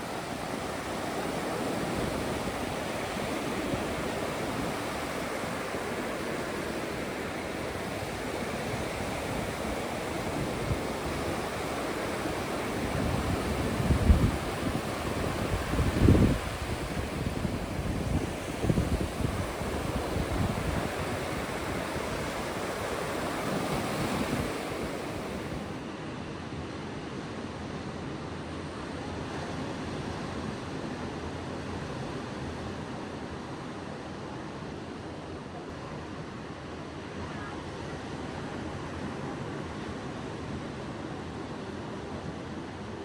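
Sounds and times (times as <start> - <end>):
wind buffeting microphone: 0.0 - 25.7
ocean surf washing onto beach: 0.0 - 25.8.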